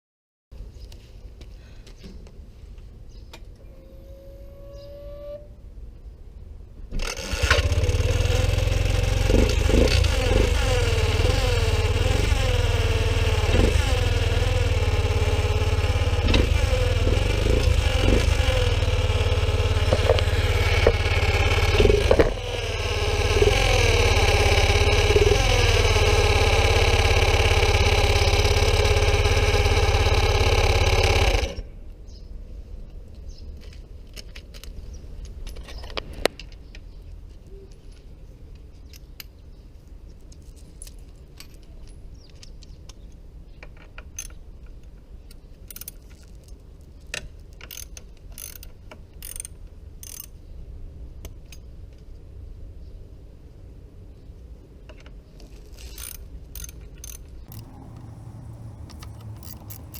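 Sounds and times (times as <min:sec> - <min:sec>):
metal tools clicking and clinking: 0:55.8 - 0:59.9.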